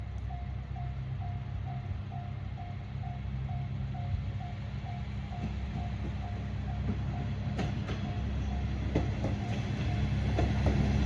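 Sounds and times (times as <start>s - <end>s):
steady low rumble: 0.0s - 7.5s
level-crossing warning bell: 0.0s - 10.6s.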